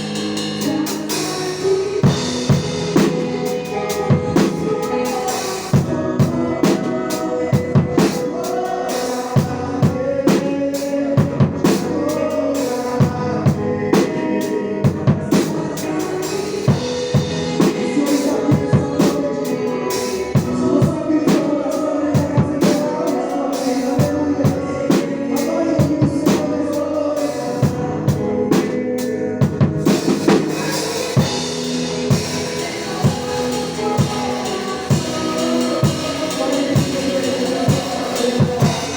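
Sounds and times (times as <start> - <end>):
band playing worship music: 0.0 - 38.9
drum kit beat with rimshots: 0.0 - 38.9.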